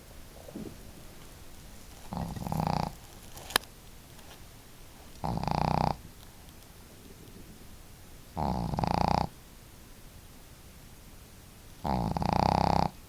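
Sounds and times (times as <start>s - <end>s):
dog snoring: 2.0s - 3.0s, 5.2s - 6.0s, 8.3s - 9.4s, 11.8s - 13.0s.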